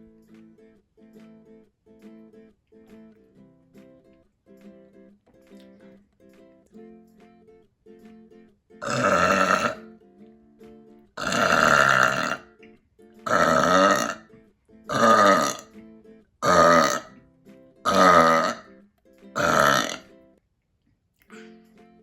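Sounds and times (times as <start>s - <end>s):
woman burping loudly: 8.8s - 9.8s, 11.2s - 12.6s, 13.3s - 14.3s, 14.9s - 15.7s, 16.4s - 17.2s, 17.9s - 18.7s, 19.4s - 20.1s.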